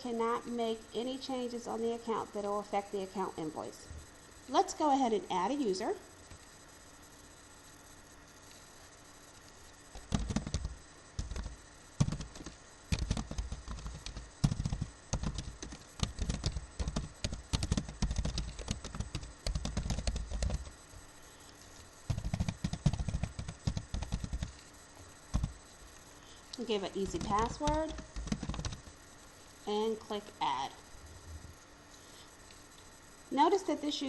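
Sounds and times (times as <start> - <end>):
keyboard typing: 9.9 - 20.7, 22.1 - 24.6, 25.3 - 25.6, 27.0 - 29.0.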